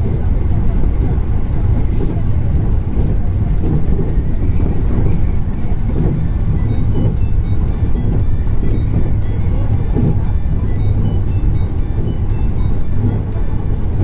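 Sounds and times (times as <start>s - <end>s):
loud low rumble: 0.0s - 14.0s
faint high ringing tones: 6.2s - 14.0s.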